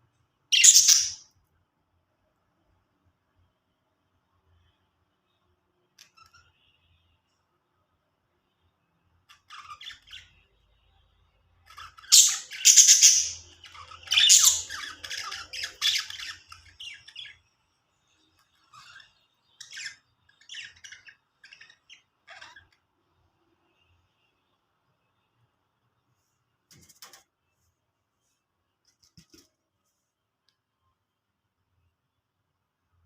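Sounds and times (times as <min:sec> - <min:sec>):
budgerigars chirping and chattering: 0:00.6 - 0:01.2, 0:11.6 - 0:17.4, 0:18.4 - 0:22.8
harsh bird squawks: 0:00.6 - 0:01.2, 0:12.1 - 0:17.1.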